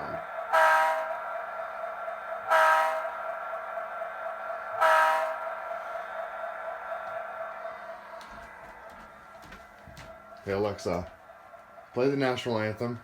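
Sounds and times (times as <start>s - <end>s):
horn blasts: 0.0s - 1.2s, 2.5s - 3.2s, 4.8s - 5.5s
faint steady hum: 0.0s - 13.0s.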